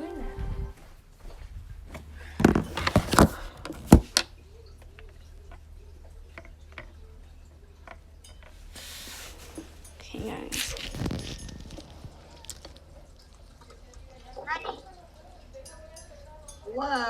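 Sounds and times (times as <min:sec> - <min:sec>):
objects knocking and scraping: 0:01.9 - 0:04.3, 0:07.8 - 0:12.9.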